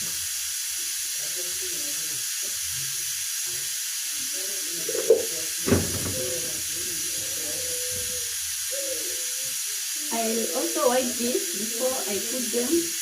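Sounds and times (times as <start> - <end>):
steady hiss: 0.0 - 13.0
object knocking when set down: 5.7 - 6.2.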